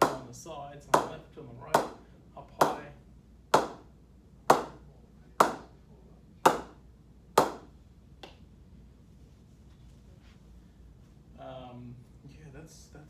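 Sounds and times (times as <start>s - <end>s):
cricket ball striking bat: 3.6s - 3.8s, 4.5s - 4.8s, 5.4s - 5.7s, 6.5s - 6.8s.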